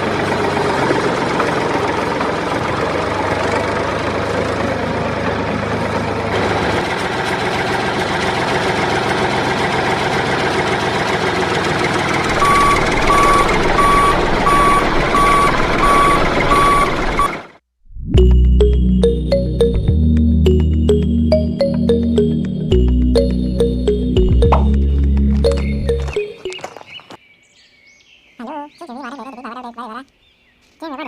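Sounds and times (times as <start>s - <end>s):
vehicle engine running: 0.0s - 17.6s, 18.2s - 26.7s
reversing alarm beeping: 12.3s - 17.4s, 20.5s - 26.7s.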